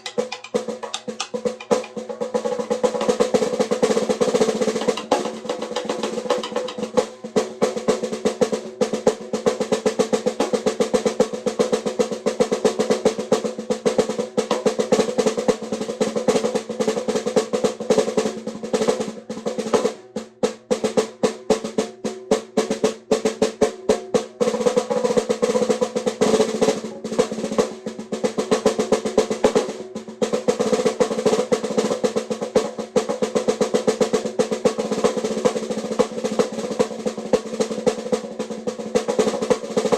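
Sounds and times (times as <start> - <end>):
snare drum rolls and hits: 0.0 - 39.9.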